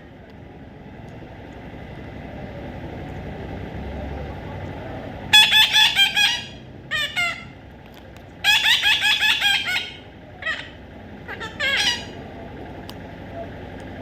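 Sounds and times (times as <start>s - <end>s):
baby parrot harsh calls: 5.4s - 7.6s, 8.4s - 12.2s.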